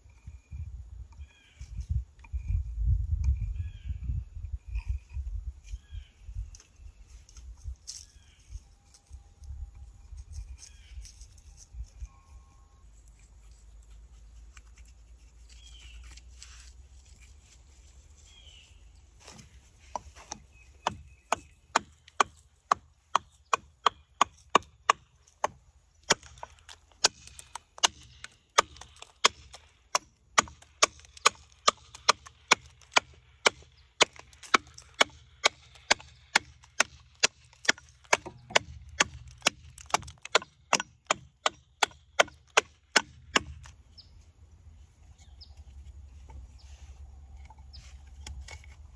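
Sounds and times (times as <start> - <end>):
axe chopping wood: 19.3 - 43.8.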